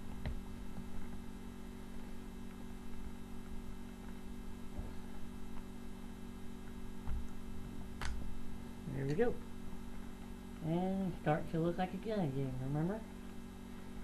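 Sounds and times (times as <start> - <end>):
electrical mains hum: 0.0 - 14.0.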